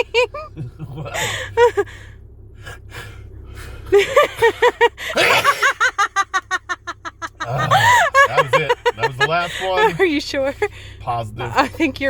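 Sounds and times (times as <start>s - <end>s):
person laughing: 0.0s - 2.0s, 3.9s - 10.0s.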